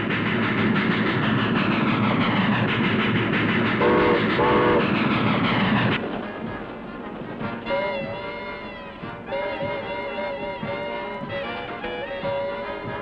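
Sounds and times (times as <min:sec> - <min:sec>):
train wheels clacking on rails: 0:00.0 - 0:13.0
steam locomotive whistle: 0:03.8 - 0:05.0, 0:06.0 - 0:13.0.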